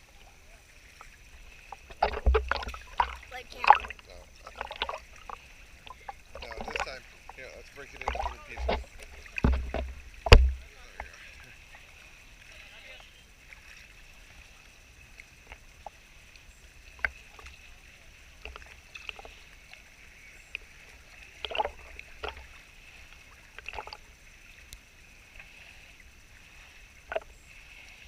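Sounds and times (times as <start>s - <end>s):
water lapping at boat: 0.0s - 28.0s
short splashes and knocks: 0.8s - 12.0s, 20.2s - 28.0s.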